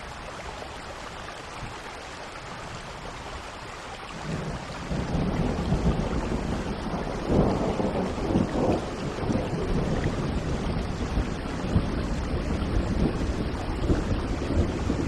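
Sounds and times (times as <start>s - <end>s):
heavy rain: 0.0s - 15.0s
low rolling thunder: 4.2s - 15.0s.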